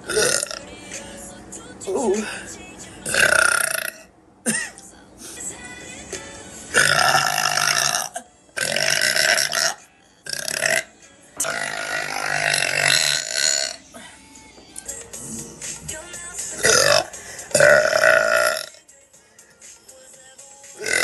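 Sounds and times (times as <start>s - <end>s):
woman burping loudly: 0.0s - 0.7s, 3.0s - 4.7s, 6.7s - 14.2s, 16.6s - 18.8s, 20.8s - 21.0s.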